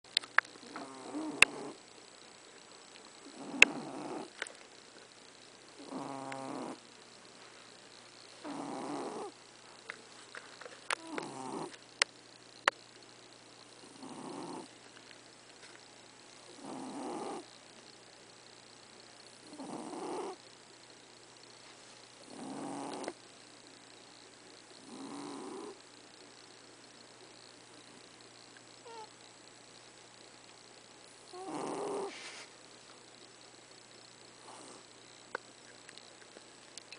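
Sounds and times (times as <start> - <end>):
cat snoring: 0.6 - 1.8, 3.2 - 4.4, 5.8 - 6.8, 8.4 - 9.4, 11.0 - 11.8, 13.8 - 14.7, 16.5 - 17.5, 19.5 - 20.4, 22.2 - 23.2, 24.8 - 25.9, 28.8 - 29.1, 31.3 - 32.5, 34.4 - 34.9.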